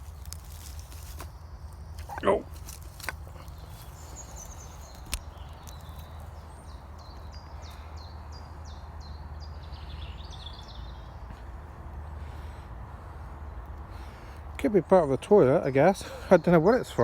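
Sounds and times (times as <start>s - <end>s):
small bird singing: 0.0s - 11.4s.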